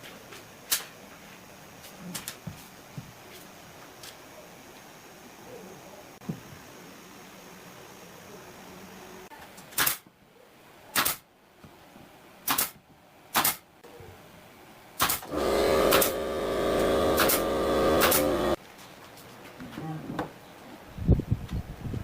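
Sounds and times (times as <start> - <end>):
power tool motor running: 15.3 - 18.6.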